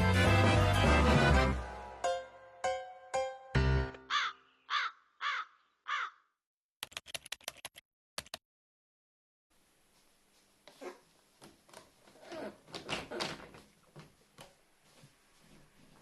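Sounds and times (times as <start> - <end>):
crow cawing: 4.1 - 6.3.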